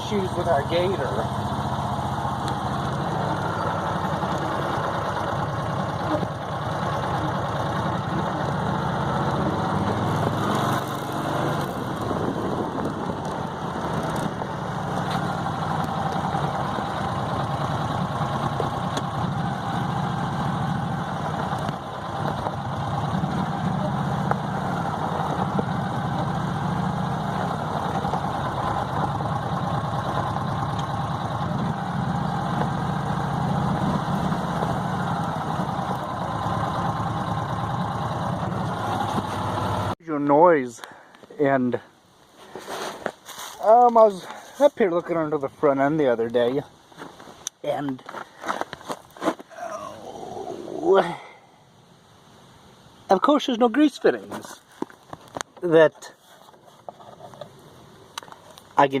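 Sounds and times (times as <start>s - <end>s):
utility vehicle engine running: 0.0s - 40.0s.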